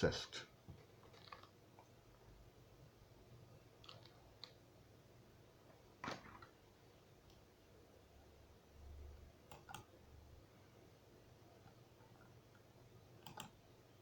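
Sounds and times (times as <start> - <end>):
faint clicks: 11.6 - 13.6.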